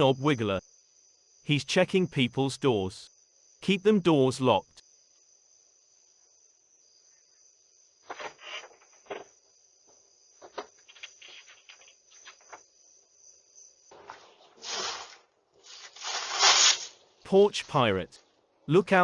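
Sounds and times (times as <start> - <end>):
crickets trilling: 0.0 - 18.0
rustling noise: 8.0 - 12.7, 13.9 - 17.0.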